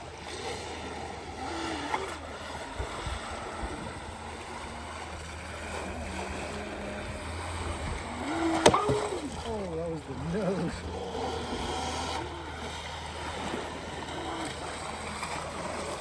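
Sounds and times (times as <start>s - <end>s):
model boat motor and water wash: 0.0s - 16.0s
sharp knocks: 8.6s - 9.2s.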